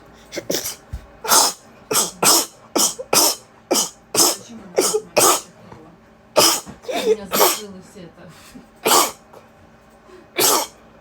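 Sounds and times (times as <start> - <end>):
woman sneezing: 0.3 - 5.5, 6.4 - 7.7, 8.8 - 9.2, 10.3 - 10.8.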